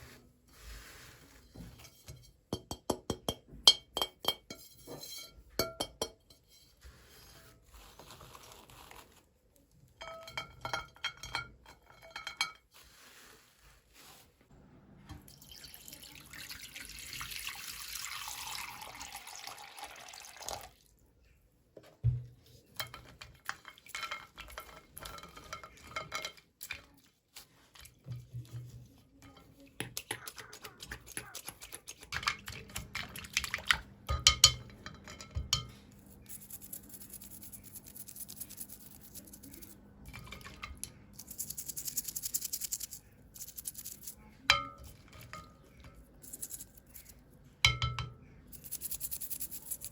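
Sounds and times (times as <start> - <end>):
small dishes clinking: 9.9 - 12.7, 22.6 - 26.9, 32.0 - 36.2, 40.0 - 41.0, 44.5 - 48.3.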